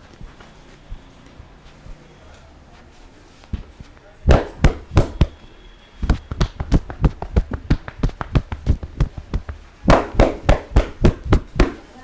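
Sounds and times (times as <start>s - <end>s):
hands tapping and slapping skin: 4.3s - 5.4s, 6.0s - 11.9s.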